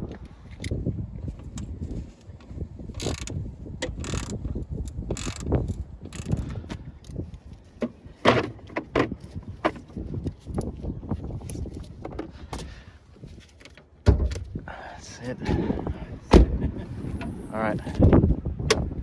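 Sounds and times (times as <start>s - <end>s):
metallic clicks and rattles of tools: 3.0s - 7.2s.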